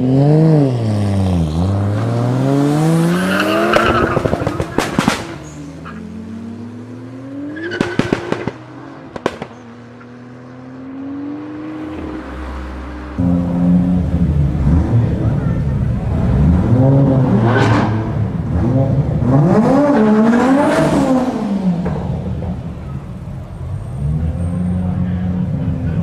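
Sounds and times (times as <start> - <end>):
car engine revving: 0.0 - 26.0
exhaust pops and cracks: 3.8 - 5.6, 7.7 - 9.7.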